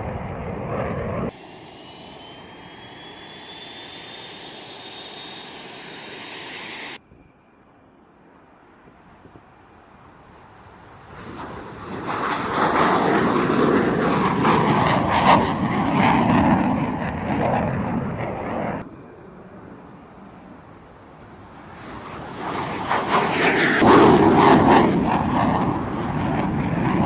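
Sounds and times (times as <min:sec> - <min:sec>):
jet engines roaring: 0:00.0 - 0:07.2, 0:07.9 - 0:27.0.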